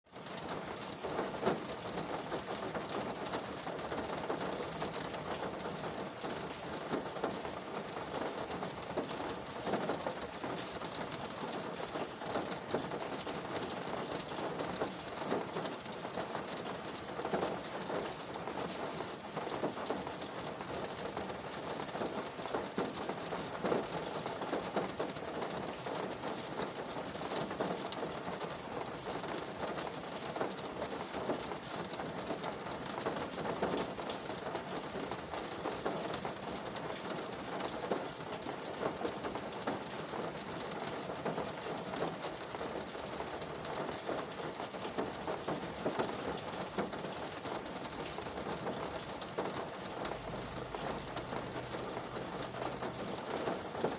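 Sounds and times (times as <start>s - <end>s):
rain on a car roof: 0.0s - 53.9s.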